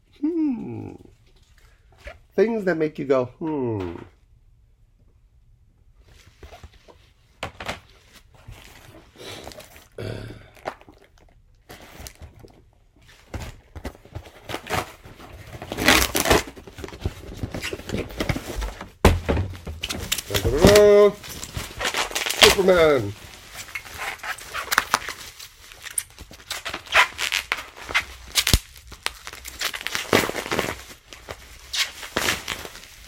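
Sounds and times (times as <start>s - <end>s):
plastic slabs knocking and scraping: 18.0s - 20.8s.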